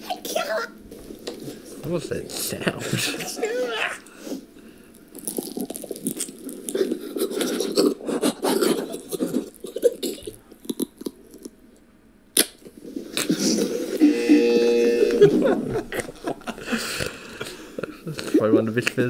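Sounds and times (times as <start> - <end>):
chewing and crunching food: 4.7 - 13.5.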